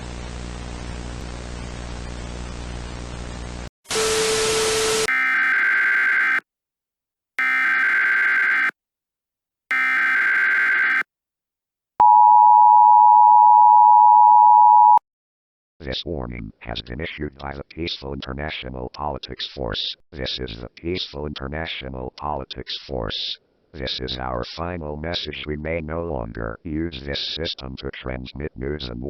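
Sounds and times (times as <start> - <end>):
static with low hum: 0.0 - 3.7
two-tone attention signal: 12.0 - 15.0.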